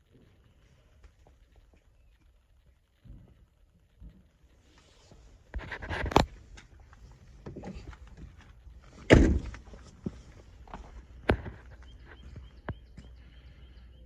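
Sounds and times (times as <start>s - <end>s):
heavy van door thud: 9.0s - 9.6s.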